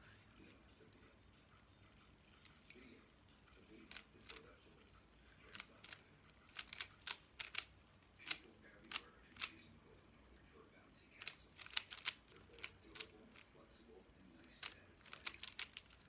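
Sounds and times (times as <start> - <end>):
plastic puzzle cube clicking: 3.8 - 4.4, 5.5 - 9.6, 11.2 - 13.5, 14.5 - 16.0.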